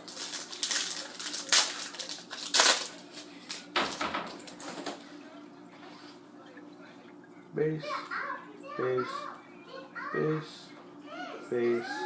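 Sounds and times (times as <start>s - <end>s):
trading cards and wrapper crinkling: 0.0s - 3.7s.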